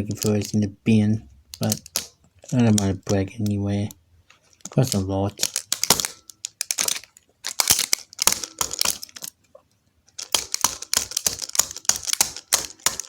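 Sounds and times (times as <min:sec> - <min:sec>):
small hard objects clattering: 0:04.6 - 0:09.3.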